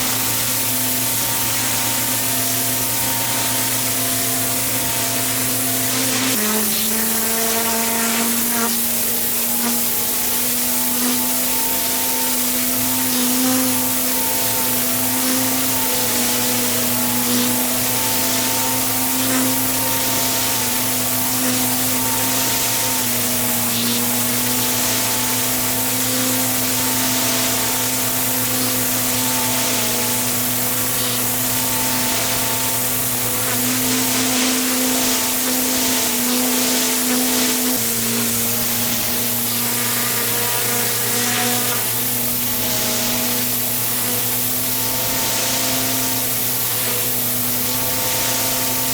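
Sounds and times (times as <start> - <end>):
pressure washer running: 0.0 - 48.9
water jet hissing on paving: 0.0 - 48.9.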